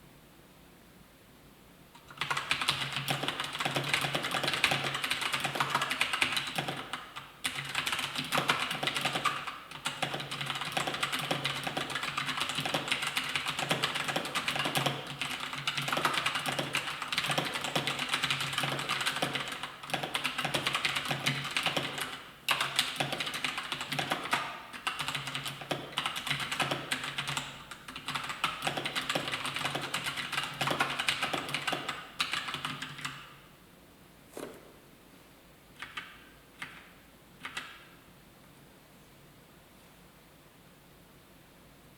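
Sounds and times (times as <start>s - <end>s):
mechanical keyboard typing: 2.0s - 33.3s, 35.8s - 37.8s.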